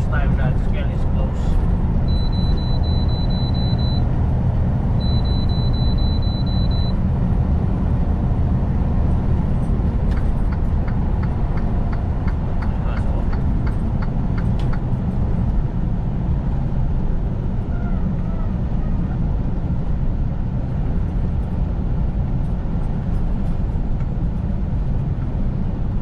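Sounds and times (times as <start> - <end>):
truck engine and road drone: 0.0 - 26.0
rapid high-pitched beeps: 2.1 - 4.0, 5.0 - 7.0
regular ticking: 2.1 - 4.2.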